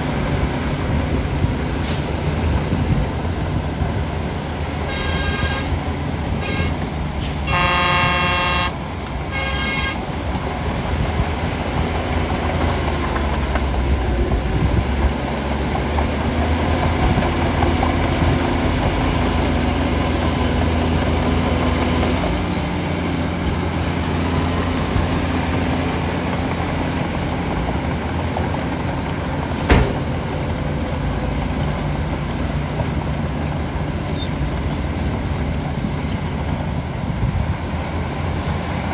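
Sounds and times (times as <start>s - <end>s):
bulldozer diesel engine running: 0.0s - 38.9s
horn sounding: 4.9s - 10.1s
short horn toots: 6.4s - 10.0s
sharp knock: 29.7s - 30.2s.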